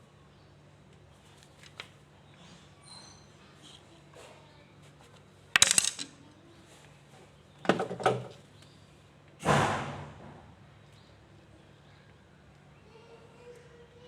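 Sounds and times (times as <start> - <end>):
hard objects clattering: 5.6 - 6.2
thud or scrape: 9.4 - 10.4.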